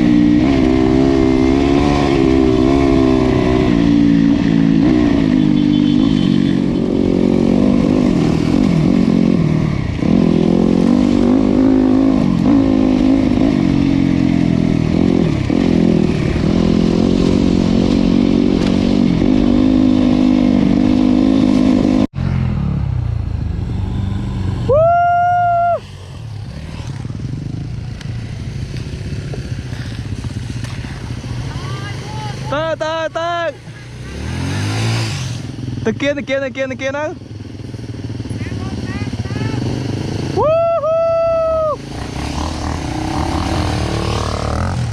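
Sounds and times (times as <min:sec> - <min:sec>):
motorcycle engine running: 0:00.0 - 0:24.8, 0:25.8 - 0:40.6
horn sounding: 0:05.2 - 0:06.8.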